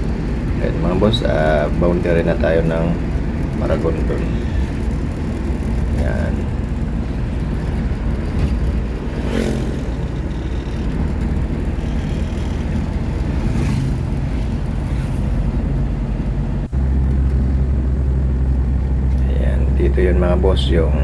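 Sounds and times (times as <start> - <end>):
engine and tyre rumble: 0.0 - 21.0
low hum: 0.0 - 21.0
brief whooshes: 9.1 - 10.1.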